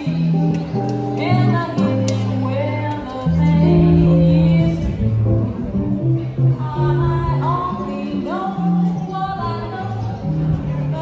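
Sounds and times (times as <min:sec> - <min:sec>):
song with singing and guitar: 0:00.0 - 0:11.0.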